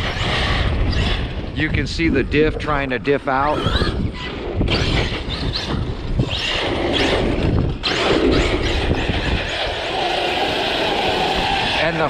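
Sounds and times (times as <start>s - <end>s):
tire and wind noise: 0.0s - 12.0s
electric motor whining: 3.4s - 12.0s.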